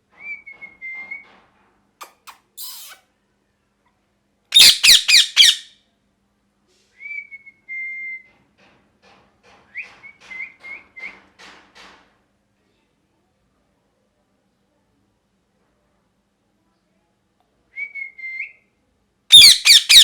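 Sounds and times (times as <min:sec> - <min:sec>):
parrot squawks: 0:02.0 - 0:03.0, 0:04.6 - 0:05.7, 0:19.3 - 0:20.0
parrot whistling: 0:02.0 - 0:03.0, 0:04.6 - 0:05.7, 0:19.3 - 0:20.0.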